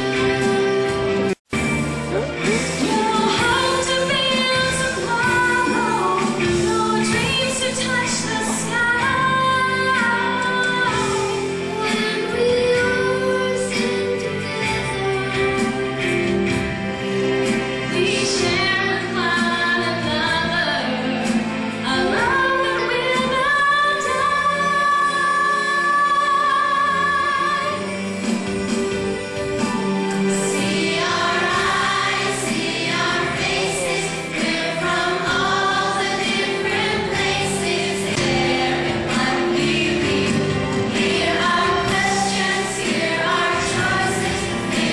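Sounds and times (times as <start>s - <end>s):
instrumental accompaniment: 0.0s - 44.9s
woman singing lead: 2.1s - 16.2s, 17.9s - 28.2s
group singing: 30.3s - 44.9s.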